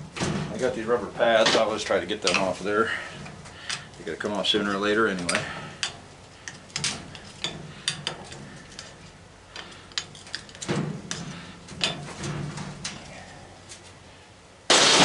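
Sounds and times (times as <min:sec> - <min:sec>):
hand tools clicking and knocking metal: 0:01.4 - 0:13.4.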